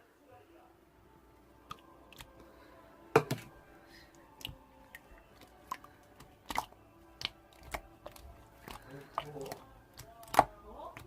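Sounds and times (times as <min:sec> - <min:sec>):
slime clicking and popping: 0:04.4 - 0:11.0.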